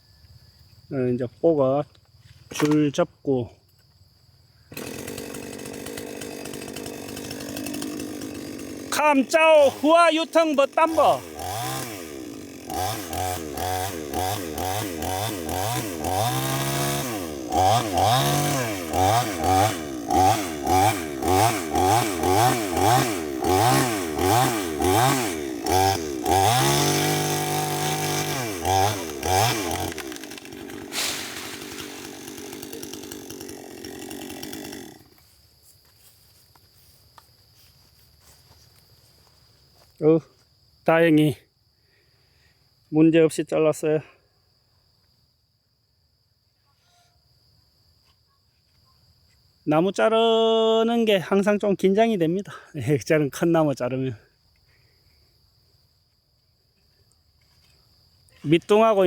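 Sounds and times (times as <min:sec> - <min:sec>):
faint insect chirr: 0:00.0 - 0:04.8, 0:35.0 - 0:59.0
chainsaw cutting tree: 0:04.7 - 0:35.4.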